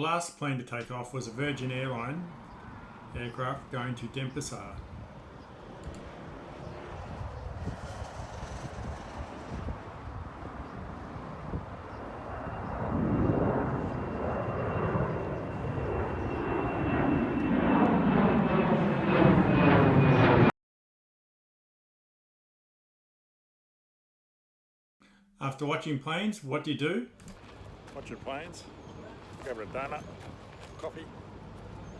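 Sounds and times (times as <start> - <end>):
jet engines whining at takeoff: 1.1 - 20.5, 27.2 - 31.9.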